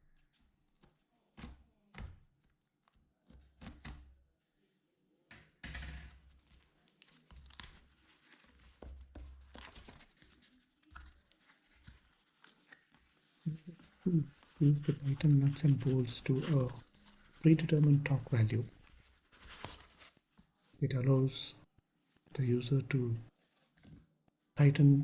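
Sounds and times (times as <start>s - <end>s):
packaging tearing rustle: 6.4s - 8.8s, 9.4s - 15.8s.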